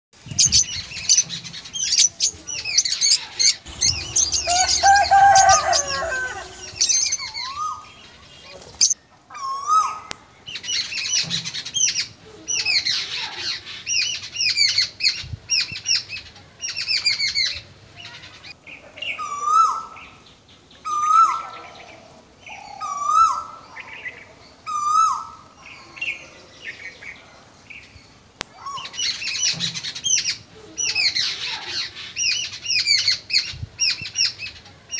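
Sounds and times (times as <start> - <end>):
birds chirping in chorus: 0.2 - 9.0.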